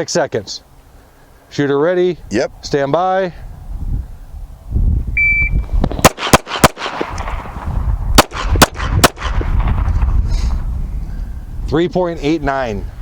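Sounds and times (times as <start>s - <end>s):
shot timer beep: 5.2s - 5.7s
pistol shots: 5.8s - 9.9s.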